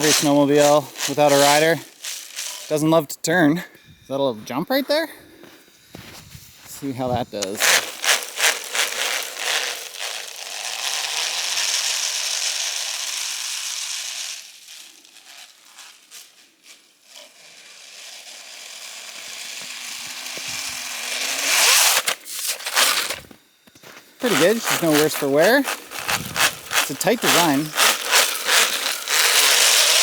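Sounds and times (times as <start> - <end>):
snow crunching: 0.0 - 10.3, 20.4 - 30.0
toy snowmobile motor hissing: 0.0 - 30.0.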